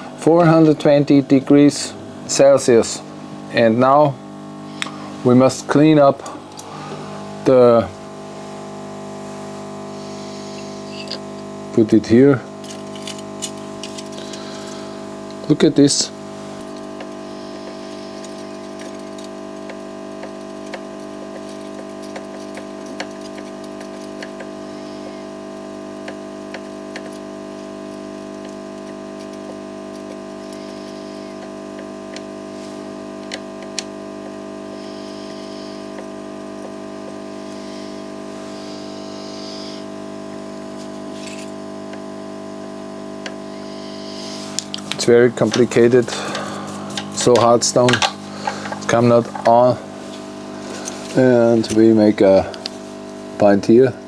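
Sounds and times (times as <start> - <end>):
electric blower humming: 0.0 - 54.0
tools clicking on circuit board: 16.7 - 24.5, 26.0 - 27.3.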